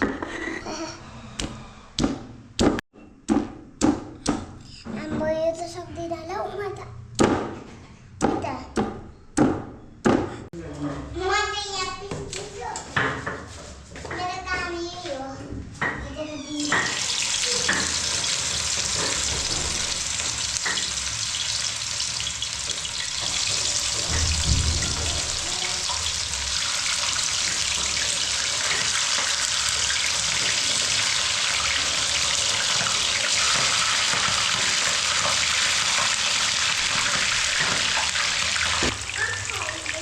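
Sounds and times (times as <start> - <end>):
fish sizzling in hot oil: 16.7 - 40.0.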